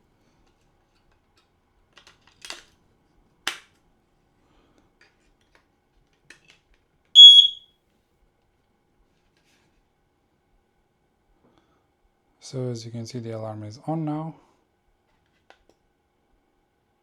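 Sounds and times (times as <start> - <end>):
alarm high-pitched beep: 7.2 - 7.6.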